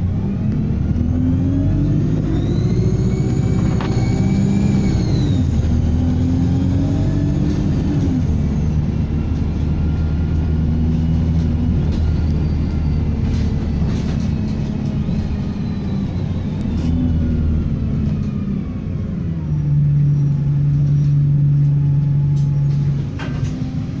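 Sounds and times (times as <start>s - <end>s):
bus diesel engine running: 0.0s - 24.0s
turbocharger whistle: 2.2s - 5.6s.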